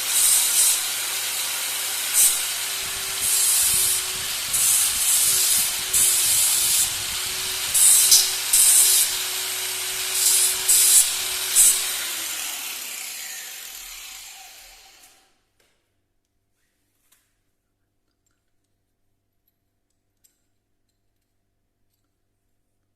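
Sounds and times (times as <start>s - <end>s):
short hissing bursts on metal: 0.0s - 12.0s
electric power tool humming: 0.0s - 15.3s.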